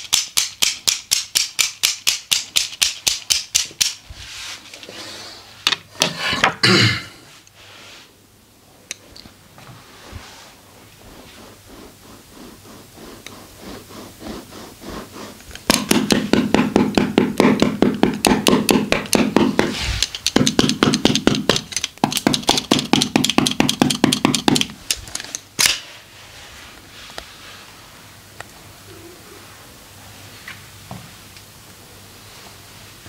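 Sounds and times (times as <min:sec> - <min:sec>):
rapid massage strikes: 0:00.0 - 0:04.0, 0:11.0 - 0:25.0.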